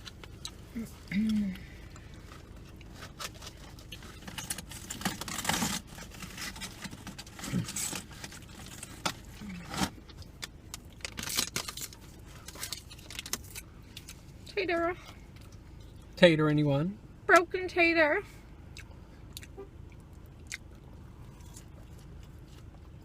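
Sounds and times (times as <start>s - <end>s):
food packaging crinkling: 2.2s - 14.2s.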